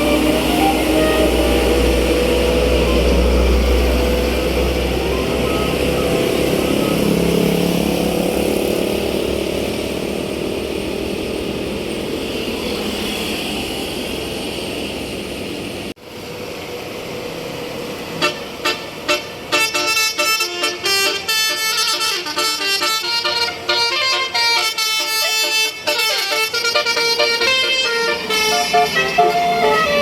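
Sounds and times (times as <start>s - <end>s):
multi-tone bus horn toots: 0.0s - 8.4s, 18.1s - 30.0s
bus engine drone: 0.0s - 30.0s.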